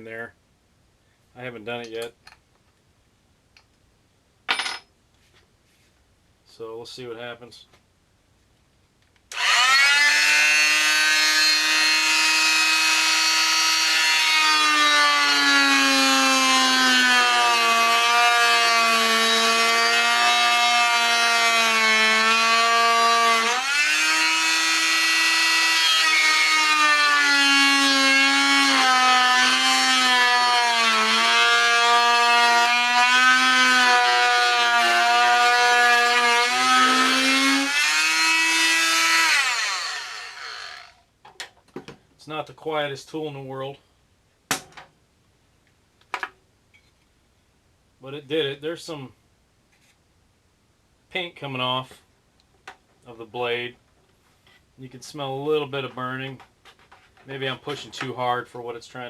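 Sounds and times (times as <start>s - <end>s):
oscillating saw cutting wood: 9.3s - 41.0s.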